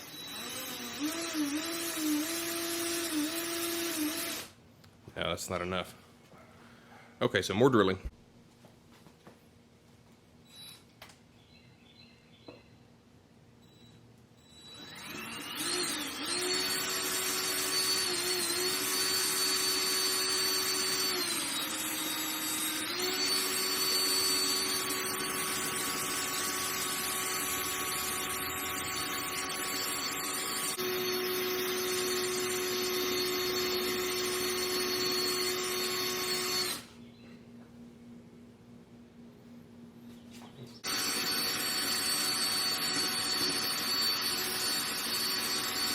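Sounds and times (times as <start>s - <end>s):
electric drill whining: 0.0s - 4.6s, 14.5s - 37.0s, 40.8s - 45.9s.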